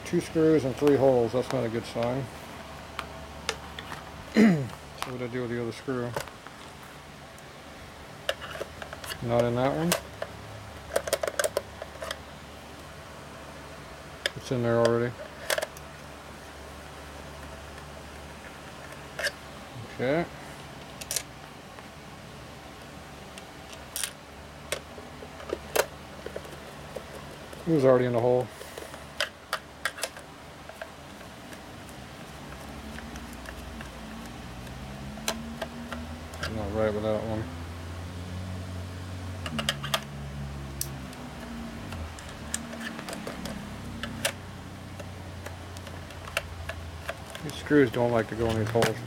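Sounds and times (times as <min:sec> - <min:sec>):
steady low hum: 0:00.0 - 0:49.0
plastic parts clicking: 0:08.3 - 0:12.2, 0:14.2 - 0:15.8, 0:23.7 - 0:27.7, 0:28.7 - 0:36.6, 0:39.4 - 0:40.1, 0:41.8 - 0:49.0.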